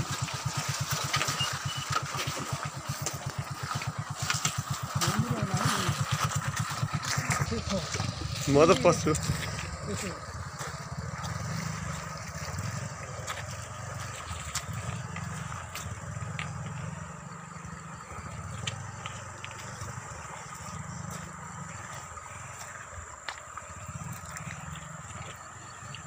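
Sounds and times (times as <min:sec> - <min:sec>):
cart wheels rumbling and rattling: 0:00.0 - 0:26.0.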